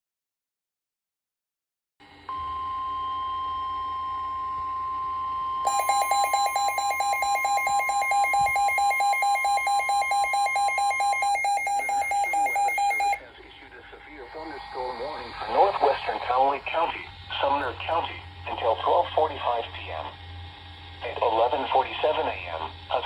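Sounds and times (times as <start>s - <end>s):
steady alarm tone: 2.3s - 13.3s
rapid electronic beeping: 5.7s - 13.2s.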